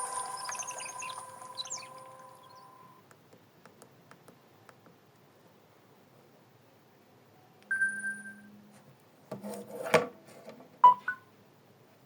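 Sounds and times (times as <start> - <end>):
smartphone tone beeps: 0.0 - 3.0.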